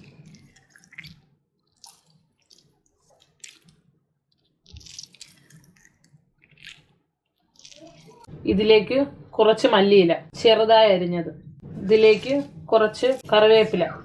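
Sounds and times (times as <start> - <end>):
juice dripping: 0.0 - 8.3
lemon squelching: 0.0 - 8.3.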